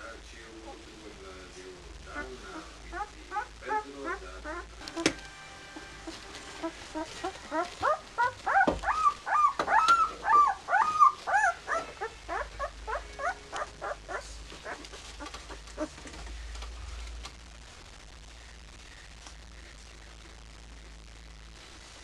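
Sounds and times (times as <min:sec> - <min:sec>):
puppies whimpering and squeaking: 0:06.0 - 0:16.1.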